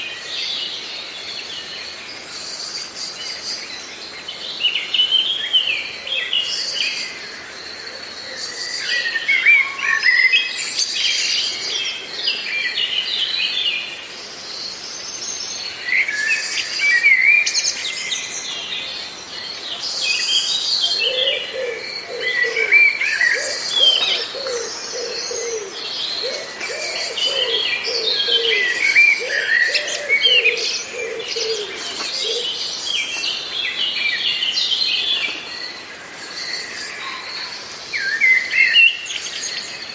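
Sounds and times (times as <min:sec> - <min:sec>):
birds chirping and singing: 0:15.1 - 0:39.9
low repeated bird call: 0:20.9 - 0:35.8.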